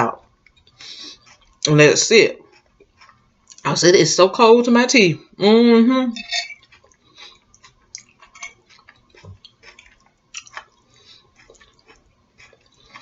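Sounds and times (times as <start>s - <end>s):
chewing salad crunches: 0.4s - 1.8s, 2.4s - 3.7s, 6.2s - 13.0s
wet mouth clicks: 6.8s - 13.0s.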